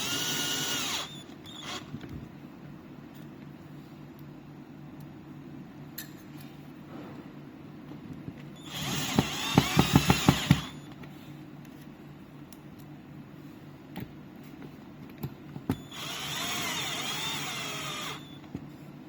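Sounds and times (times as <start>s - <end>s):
power drill running: 0.0s - 1.9s, 8.6s - 10.8s, 15.8s - 18.4s.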